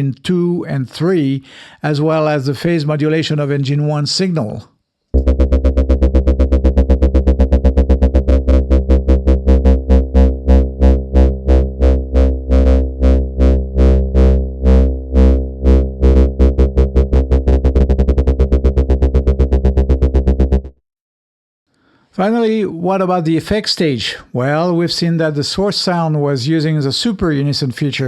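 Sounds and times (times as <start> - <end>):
pulsing synthesized bass note: 5.2 - 20.8.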